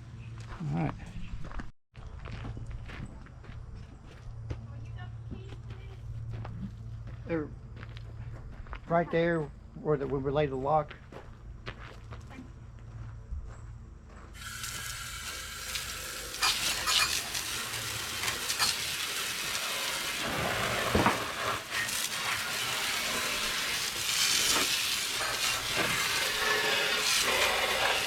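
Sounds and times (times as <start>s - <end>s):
pressure washer spraying metal: 14.4s - 28.0s.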